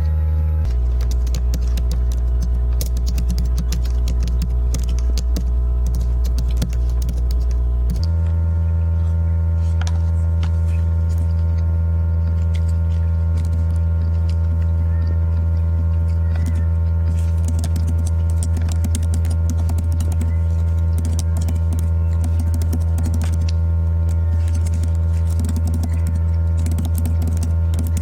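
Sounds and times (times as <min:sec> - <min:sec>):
loud electrical hum: 0:00.0 - 0:28.0
faint scattered clicks: 0:00.7 - 0:08.1.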